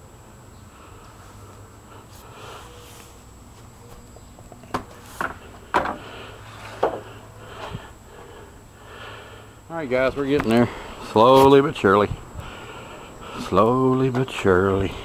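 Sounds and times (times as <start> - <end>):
low background hum: 0.0 - 15.0
wooden knocks and clatters: 4.3 - 6.0.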